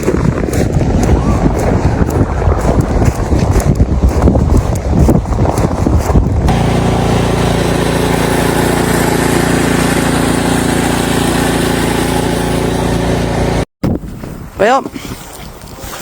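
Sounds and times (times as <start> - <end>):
wind buffeting microphone: 0.0 - 6.8, 13.8 - 16.0
engine running steadily: 3.0 - 13.7.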